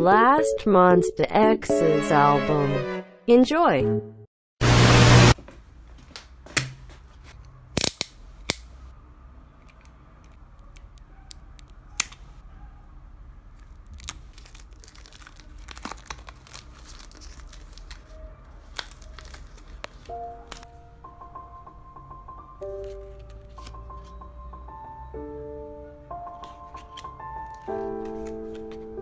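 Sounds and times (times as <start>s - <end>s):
plastic wrap crinkling: 13.5s - 20.6s
packaging clicks and taps: 13.6s - 20.7s, 26.3s - 29.0s.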